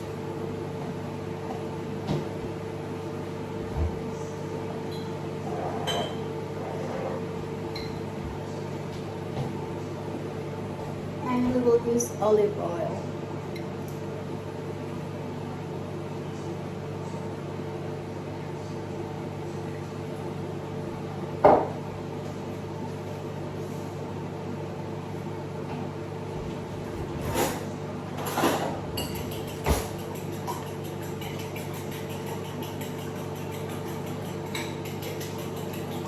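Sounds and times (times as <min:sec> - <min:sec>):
kitchenware clattering: 0:05.7 - 0:06.3, 0:27.2 - 0:36.0.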